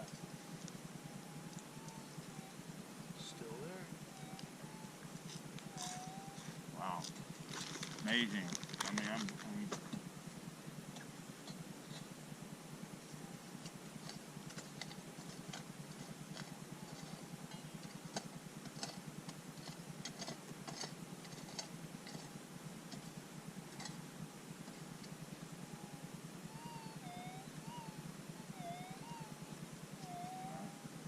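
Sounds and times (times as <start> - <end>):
faint steady detector tone: 0.0 - 31.0
stones and gravel clicking: 7.5 - 9.6.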